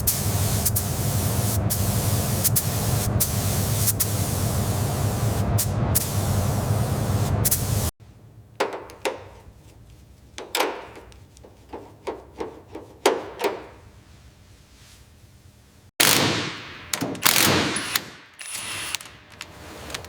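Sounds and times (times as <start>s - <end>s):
steady spraying hiss: 0.0s - 7.9s
hand tools knocking and tapping: 8.6s - 9.5s, 10.4s - 13.7s.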